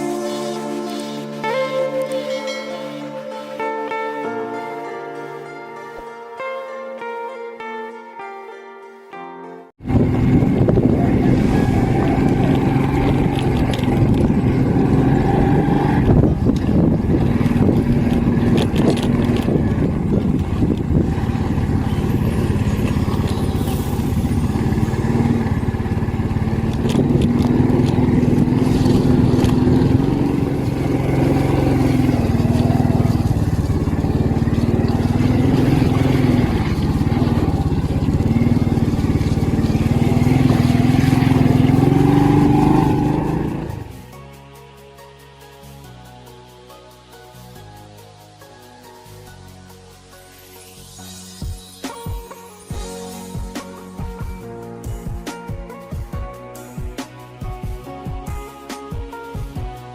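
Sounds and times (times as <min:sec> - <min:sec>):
engine revving: 0:09.8 - 0:44.1.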